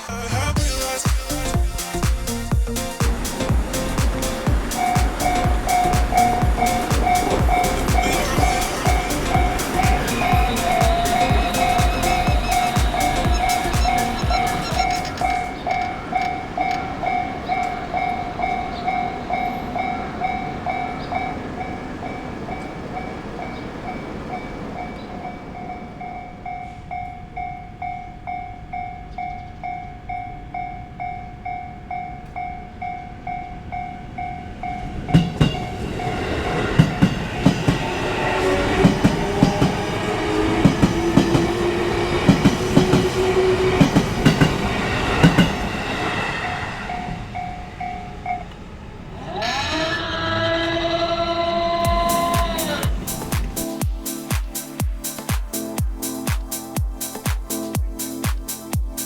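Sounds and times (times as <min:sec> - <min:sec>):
rising whine: 0:00.0 - 0:20.9
level crossing warning bell: 0:02.3 - 0:49.1
train wheels knocking over rail joints: 0:03.1 - 0:16.8, 0:35.2 - 0:45.7.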